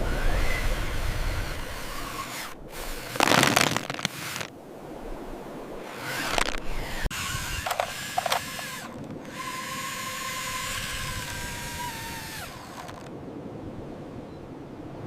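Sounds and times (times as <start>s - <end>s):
toy vehicle motor whining: 0.0s - 4.5s, 5.9s - 13.1s.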